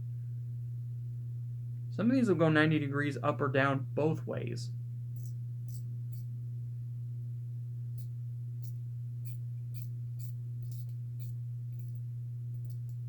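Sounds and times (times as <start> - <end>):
steady low hum: 0.0 - 13.0
wrench head clicking: 8.0 - 12.0, 12.6 - 13.0.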